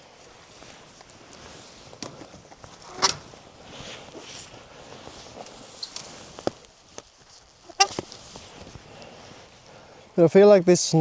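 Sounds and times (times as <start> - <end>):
wire fence rustling: 0.2 - 9.1.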